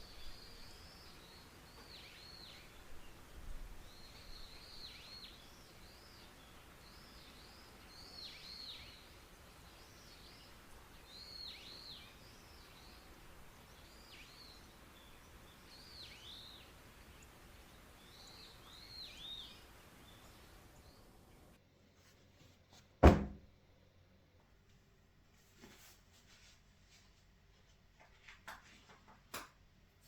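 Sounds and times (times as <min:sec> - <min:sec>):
steady outdoor hiss: 0:00.0 - 0:21.6
loud thud: 0:23.0 - 0:23.4.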